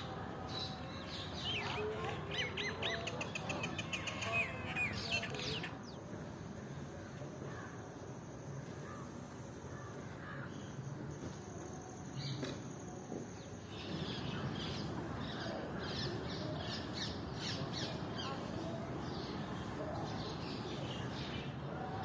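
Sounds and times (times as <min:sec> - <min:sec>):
low background noise: 0:00.0 - 0:22.0.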